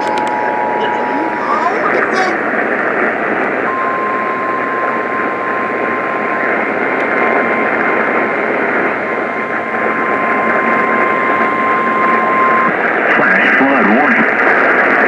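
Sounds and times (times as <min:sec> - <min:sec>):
steady alarm beep: 0:00.0 - 0:02.6, 0:03.6 - 0:12.9
radio static: 0:00.0 - 0:15.0.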